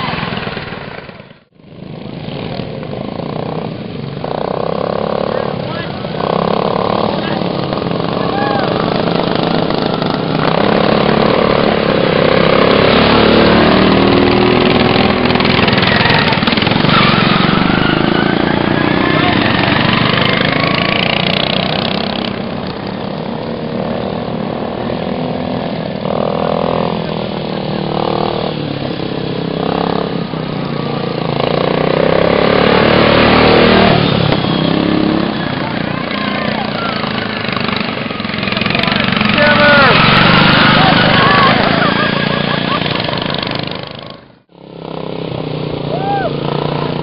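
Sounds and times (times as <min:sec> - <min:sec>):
lawnmower engines revving: 0:00.0 - 0:47.0.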